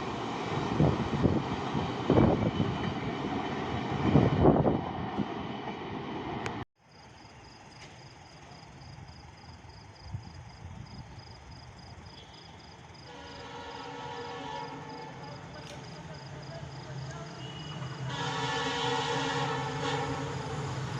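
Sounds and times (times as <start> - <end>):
passing train: 0.0 - 20.9
insect chirping: 6.8 - 14.0, 14.6 - 18.1.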